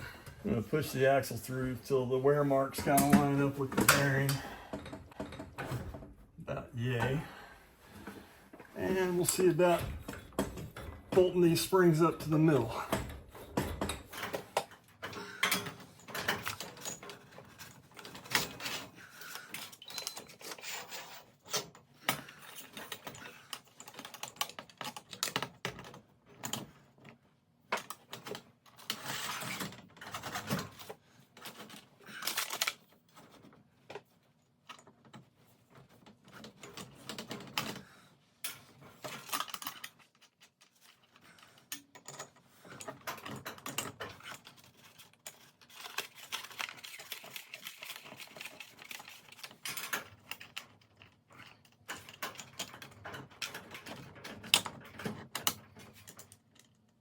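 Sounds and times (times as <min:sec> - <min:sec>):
metal clicks and clinks of wrenches: 0:02.5 - 0:05.5.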